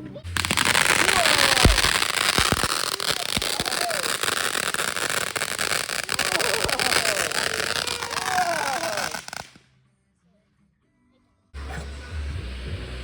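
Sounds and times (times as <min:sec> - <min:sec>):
ground fountain firework hissing: 0:00.2 - 0:09.6, 0:11.6 - 0:13.0
fine crackling: 0:00.3 - 0:09.5.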